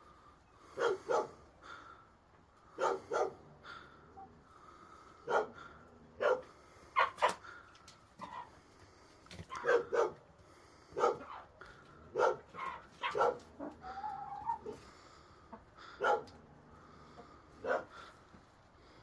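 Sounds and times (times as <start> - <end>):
dog barking: 0.8 - 1.4, 2.8 - 3.5, 5.2 - 7.4, 9.5 - 10.2, 10.9 - 11.5, 12.1 - 13.7, 16.0 - 16.4, 17.6 - 18.1
dog high call: 6.2 - 7.4, 9.5 - 10.2, 12.2 - 14.8.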